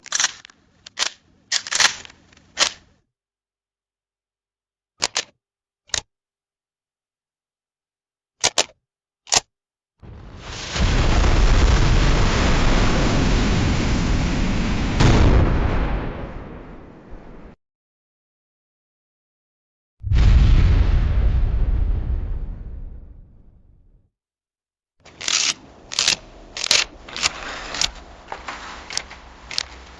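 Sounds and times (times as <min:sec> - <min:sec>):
low rumble: 0:20.0 - 0:24.0
camera shutter clicks: 0:25.2 - 0:28.0, 0:28.9 - 0:29.7.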